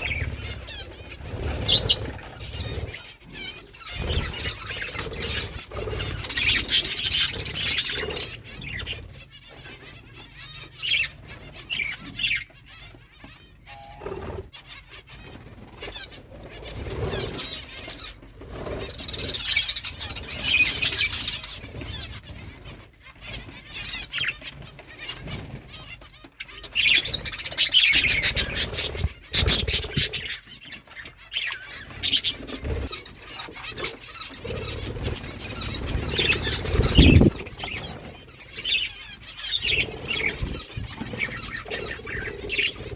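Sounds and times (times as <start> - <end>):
wing flapping: 0.0 - 3.0, 26.9 - 30.4, 31.8 - 38.8
budgerigars chirping: 0.0 - 42.9.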